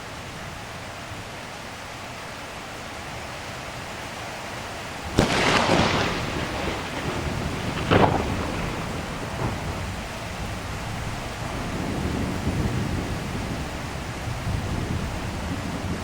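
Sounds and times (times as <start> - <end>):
steady rain: 0.0 - 16.0
thunder cracking and rumbling: 5.1 - 16.0.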